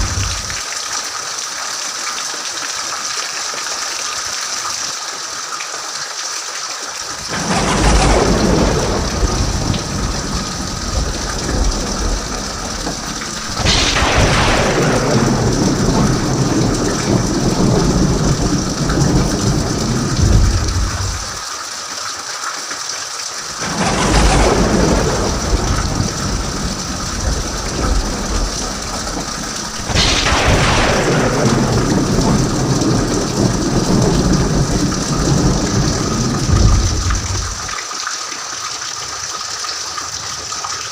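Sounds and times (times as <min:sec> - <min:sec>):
thunder rolling: 0:00.0 - 0:00.6, 0:07.2 - 0:21.4, 0:23.5 - 0:37.8
heavy rain hiss: 0:00.0 - 0:05.1, 0:06.4 - 0:38.4.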